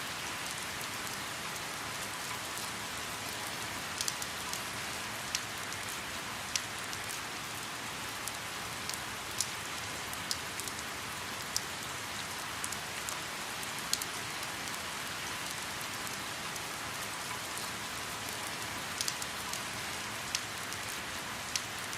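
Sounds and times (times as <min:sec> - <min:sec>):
light rain on water: 0:00.0 - 0:21.9.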